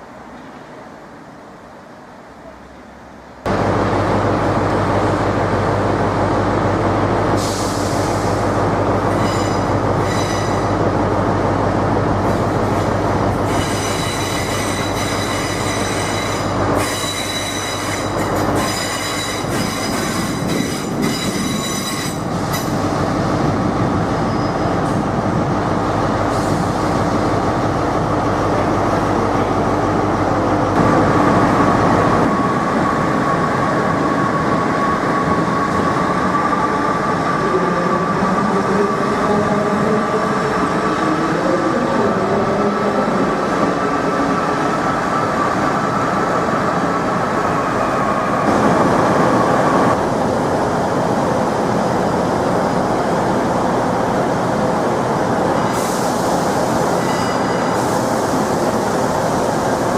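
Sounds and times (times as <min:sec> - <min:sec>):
train running: 0:00.0 - 0:59.9
train wheels squealing: 0:09.1 - 0:10.7, 0:13.4 - 0:22.7, 0:24.2 - 0:24.8, 0:56.9 - 0:58.1.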